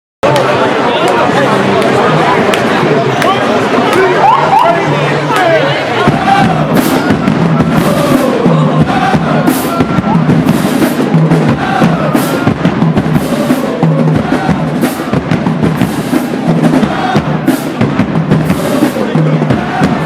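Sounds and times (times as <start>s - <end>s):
snare and bass drums: 5.3s - 20.0s.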